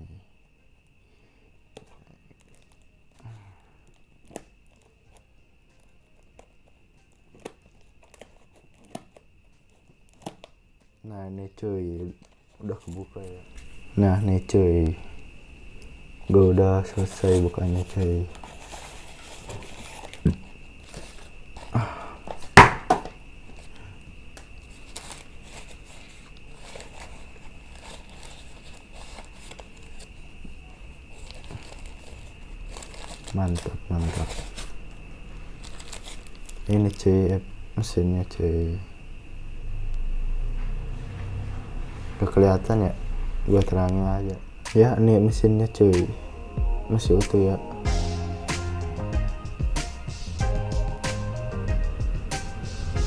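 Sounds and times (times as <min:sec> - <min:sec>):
faint high whine: 0:00.0 - 0:53.0
packaging handling noise: 0:03.8 - 0:11.0, 0:12.1 - 0:37.1, 0:46.9 - 0:47.8
sharp knocks on hard surface: 0:22.6 - 0:23.1.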